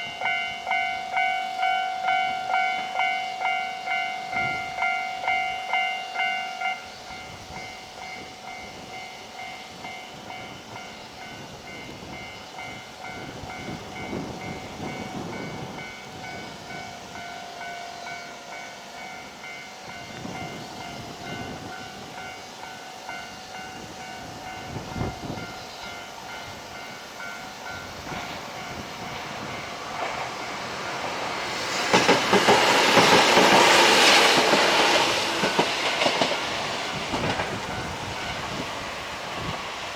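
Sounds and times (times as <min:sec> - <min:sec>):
level-crossing bell ringing: 0:00.0 - 0:29.7
train passing with wheel noise: 0:00.0 - 0:39.9.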